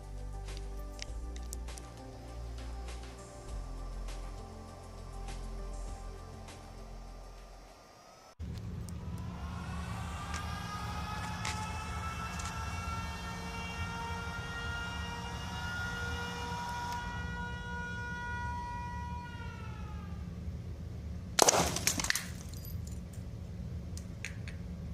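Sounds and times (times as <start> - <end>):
capacitor charger whine: 0.0 - 18.6
steady low hum: 0.0 - 18.6, 19.3 - 24.9
lightbulb shattering crash: 21.4 - 22.9
glass tinkling: 22.2 - 23.2.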